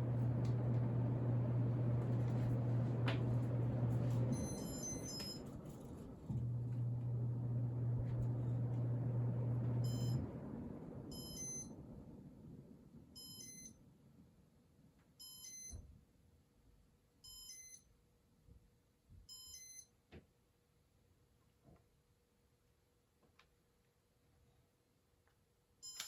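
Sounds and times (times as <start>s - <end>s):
fan blades coasting down: 0.0s - 11.2s
ceiling fan motor hum: 0.0s - 13.1s.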